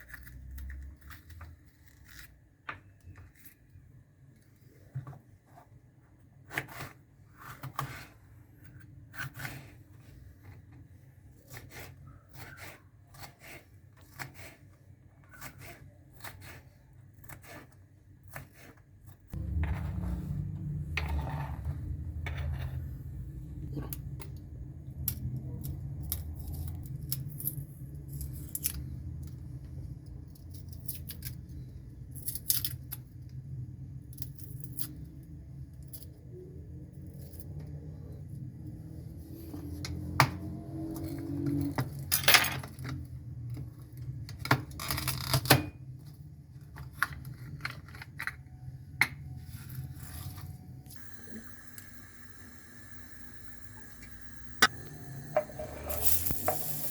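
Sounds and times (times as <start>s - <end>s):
steady low hum: 19.3s - 26.5s.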